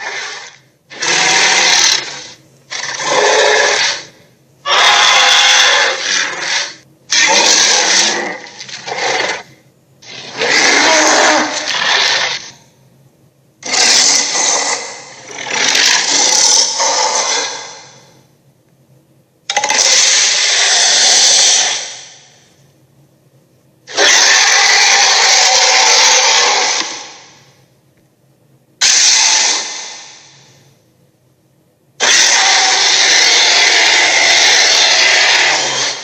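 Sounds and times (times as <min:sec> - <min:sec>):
dragon roars: 0:00.0 - 0:04.1, 0:04.7 - 0:12.5, 0:13.6 - 0:18.0, 0:19.6 - 0:22.1, 0:23.9 - 0:27.3, 0:32.0 - 0:36.0.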